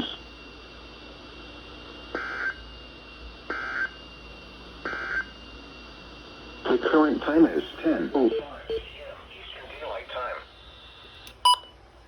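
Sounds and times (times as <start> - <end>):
faint radio hiss: 4.6 - 11.4.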